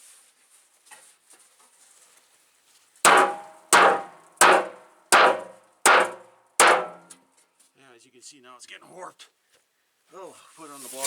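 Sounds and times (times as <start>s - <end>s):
sledgehammer striking steel: 3.1s - 7.1s.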